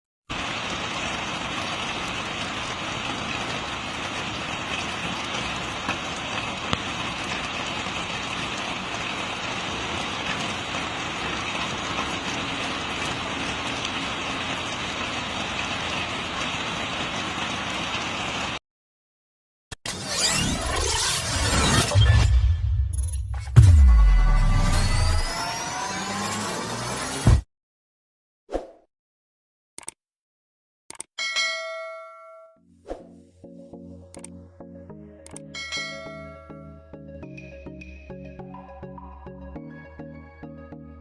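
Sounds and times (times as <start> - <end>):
heavy rain falling: 0.3 - 18.6.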